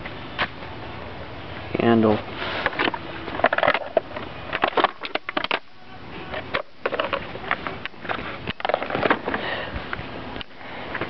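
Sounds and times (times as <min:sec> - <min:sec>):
plastic parts clicking and rustling: 0:02.6 - 0:05.7, 0:06.3 - 0:09.4.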